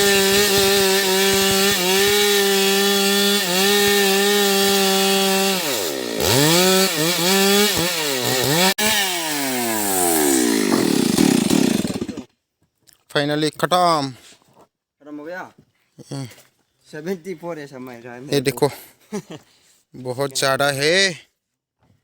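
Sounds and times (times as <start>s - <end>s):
chainsaw cutting wood: 0.0s - 12.3s.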